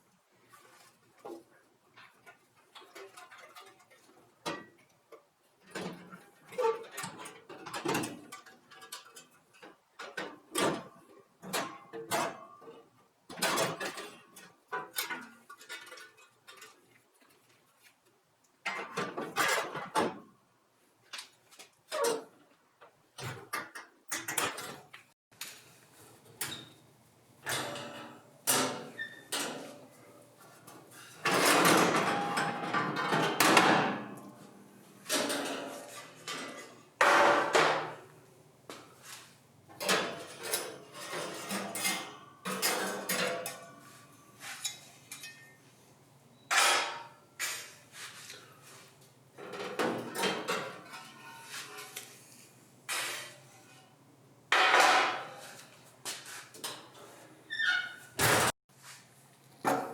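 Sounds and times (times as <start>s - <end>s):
hard parts knocking and clattering: 31.2s - 34.4s, 35.0s - 38.0s
continuous scraping: 47.4s - 54.0s.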